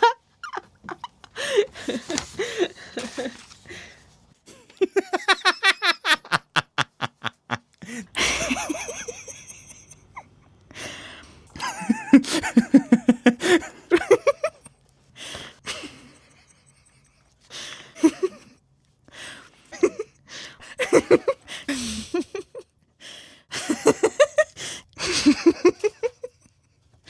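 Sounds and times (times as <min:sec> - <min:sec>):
people laughing: 0:04.5 - 0:10.3, 0:11.6 - 0:14.7, 0:20.8 - 0:21.5.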